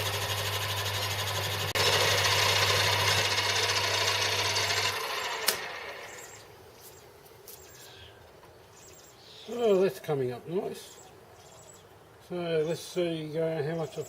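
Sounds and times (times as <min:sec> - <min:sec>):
lathe motor hum: 0:00.0 - 0:06.4
lathe tool scraping cut: 0:00.0 - 0:06.4.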